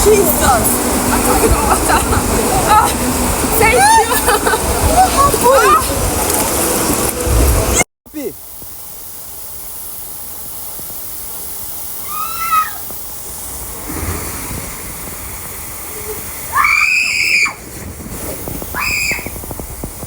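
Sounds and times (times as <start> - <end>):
splashing water rushing: 0.0 - 7.8, 12.0 - 20.0
shrill screams: 12.0 - 12.8, 16.5 - 17.6, 18.7 - 19.3.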